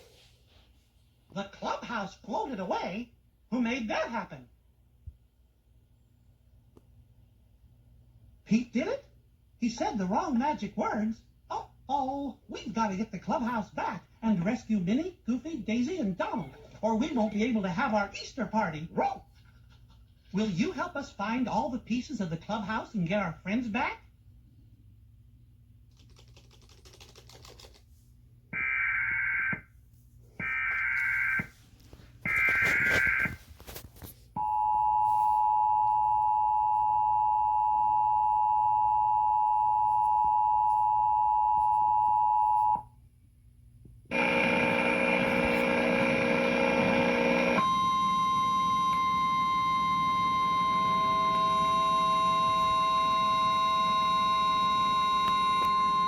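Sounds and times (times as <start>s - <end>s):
harsh buzzing alarm tone: 28.6s - 29.7s, 30.4s - 31.6s, 32.2s - 33.4s, 44.1s - 56.0s
two-tone attention signal: 47.6s - 56.0s.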